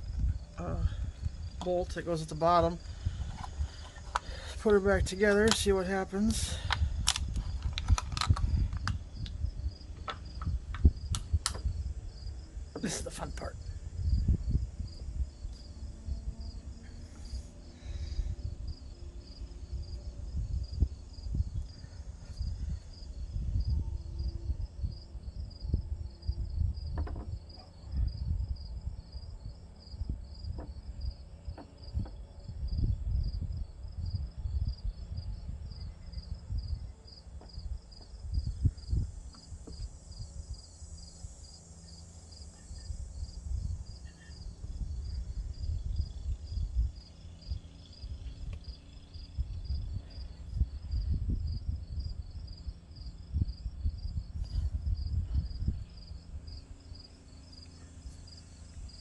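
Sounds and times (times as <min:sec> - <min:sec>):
insects chirping: 0:00.0 - 0:59.0
low rumble: 0:06.5 - 0:37.0.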